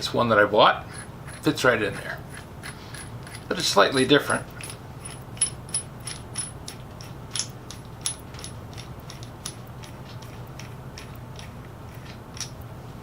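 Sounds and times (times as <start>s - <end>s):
steady low hum: 0.0s - 13.0s
metal pieces clicking and clinking: 4.5s - 12.6s.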